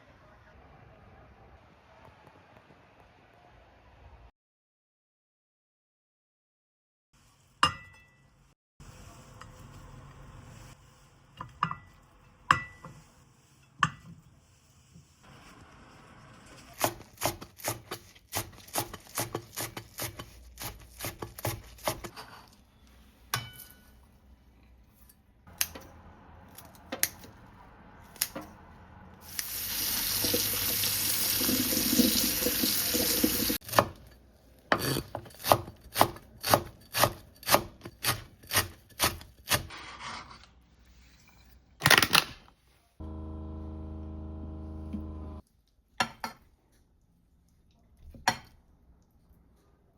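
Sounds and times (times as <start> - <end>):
water running from tap: 29.2 - 33.6.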